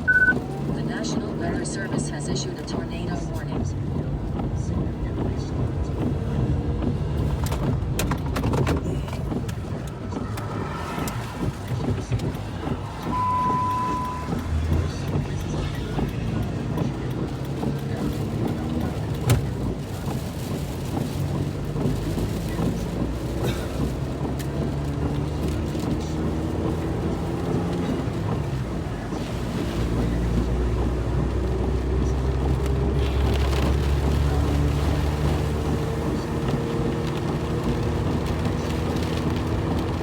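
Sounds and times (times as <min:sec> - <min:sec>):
short steady beep: 0:00.0 - 0:00.4, 0:13.0 - 0:14.5
road and wind rumble: 0:00.0 - 0:40.0
vehicle engine accelerating: 0:00.0 - 0:40.0.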